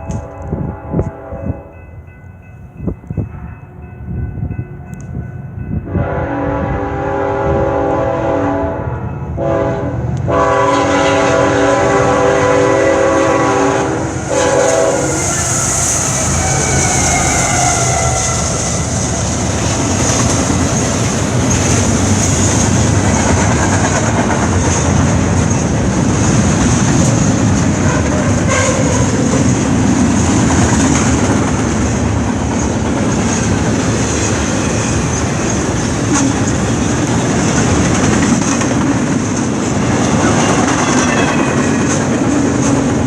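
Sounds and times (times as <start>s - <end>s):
train wheels rumbling and clacking: 0.0s - 43.0s
locomotive air horn chord: 0.1s - 1.7s, 5.9s - 18.7s, 27.8s - 29.1s.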